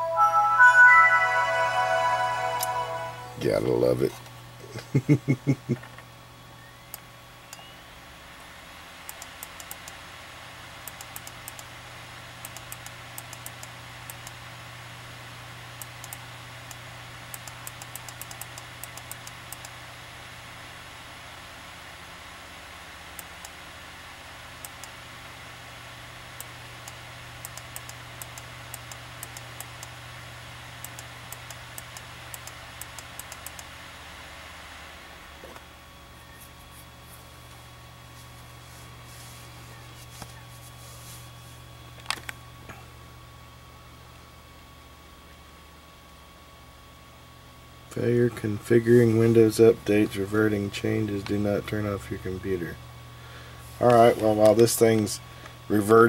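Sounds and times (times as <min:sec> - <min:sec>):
steady low hum: 0:01.2 - 0:56.0
laptop keyboard clicking: 0:17.4 - 0:19.7, 0:30.9 - 0:33.7
light high ticks: 0:30.8 - 0:33.7.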